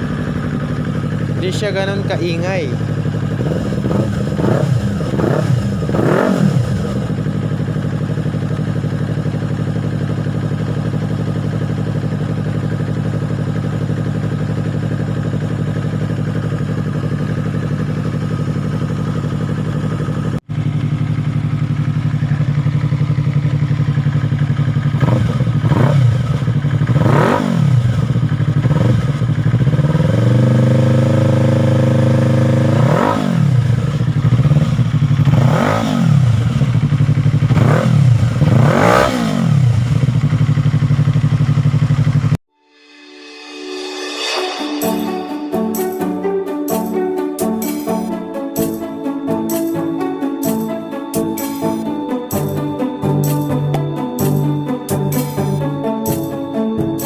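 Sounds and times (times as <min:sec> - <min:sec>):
motorcycle engine revving and idling: 0:00.0 - 0:42.4.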